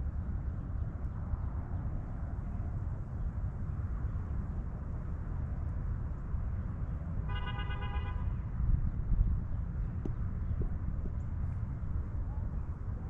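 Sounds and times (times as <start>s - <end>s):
low outdoor rumble: 0.0s - 13.0s
car horn honk: 7.3s - 8.3s.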